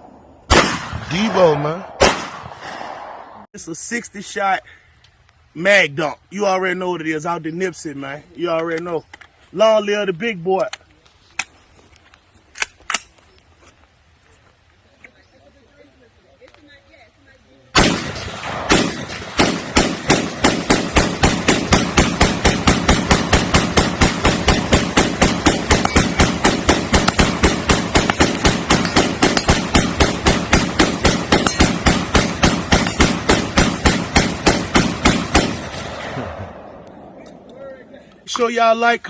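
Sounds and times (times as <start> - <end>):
rapid pistol shots: 0.5 - 3.2, 17.8 - 36.6.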